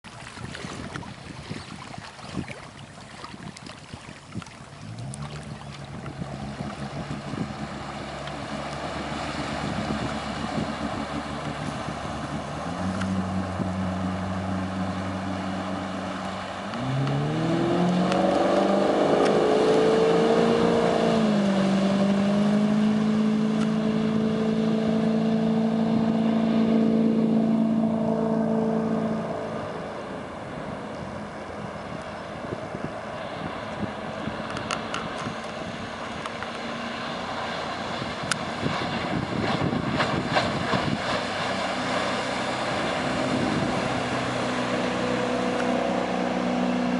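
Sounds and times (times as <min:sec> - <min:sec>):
boat engine running: 0:00.0 - 0:46.9
water rushing under boat: 0:00.0 - 0:46.9
wind rushing: 0:37.8 - 0:45.3.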